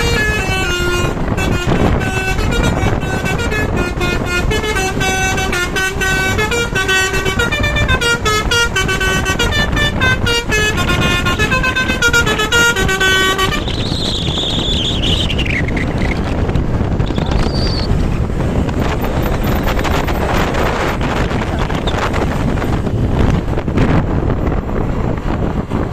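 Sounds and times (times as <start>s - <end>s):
bus musical air horn tune: 0.0s - 14.7s
vehicle noise: 0.0s - 25.9s.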